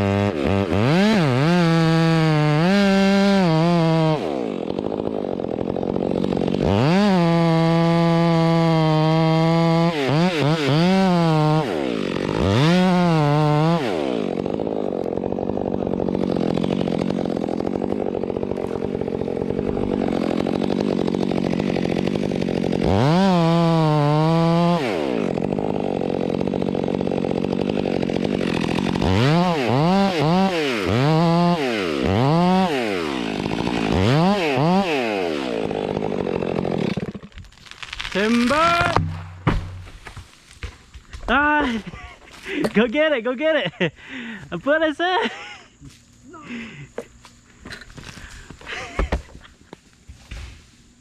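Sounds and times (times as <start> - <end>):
chainsaw cutting: 0.0 - 51.0
tree falling: 4.2 - 30.5, 31.2 - 43.0.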